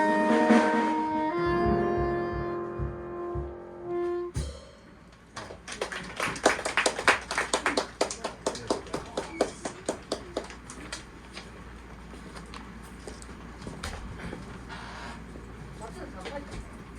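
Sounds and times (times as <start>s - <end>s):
band holding final note: 0.0s - 5.0s
audience applauding: 5.4s - 11.4s.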